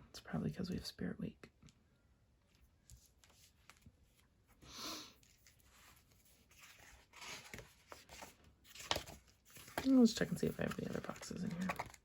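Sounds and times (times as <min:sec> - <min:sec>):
paper sheets rustling and clicking: 0:05.2 - 0:12.0.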